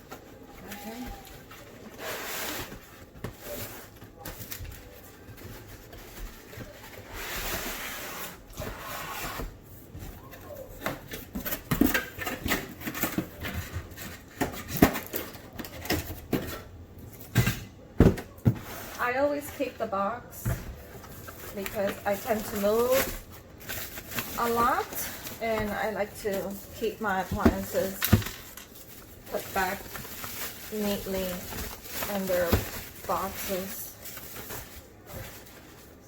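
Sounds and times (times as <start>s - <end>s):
cardboard packaging rustling: 20.5s - 36.0s.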